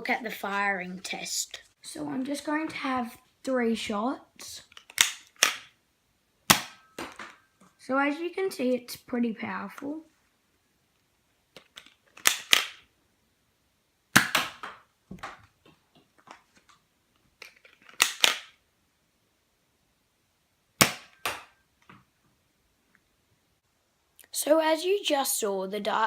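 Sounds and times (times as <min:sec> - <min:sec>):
toy pistol plastic snaps and clicks: 0:04.7 - 0:05.7, 0:11.6 - 0:12.8, 0:17.4 - 0:18.6.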